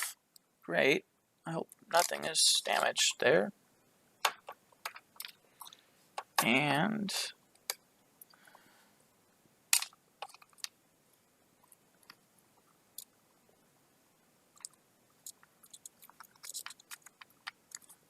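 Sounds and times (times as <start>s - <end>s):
laptop parts clicking: 9.7s - 10.8s, 14.6s - 18.0s.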